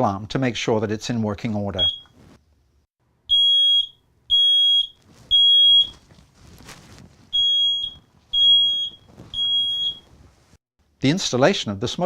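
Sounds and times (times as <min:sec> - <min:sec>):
smoke alarm high-pitched beeps: 0:01.8 - 0:02.1, 0:03.3 - 0:06.0, 0:07.3 - 0:10.1.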